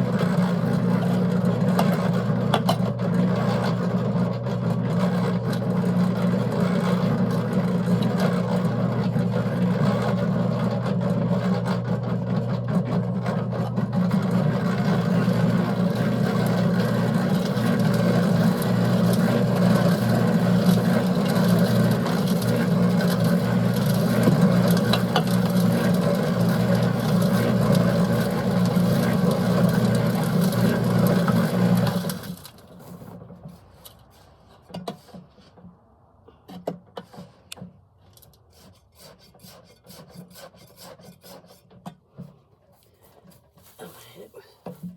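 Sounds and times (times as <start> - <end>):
concrete mixer churning: 0.0 - 35.4.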